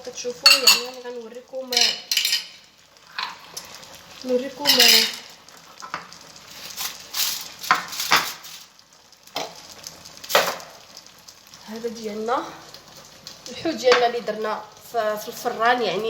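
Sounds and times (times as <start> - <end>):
metal utensils scraping a dish: 1.7 - 2.6, 4.7 - 5.3.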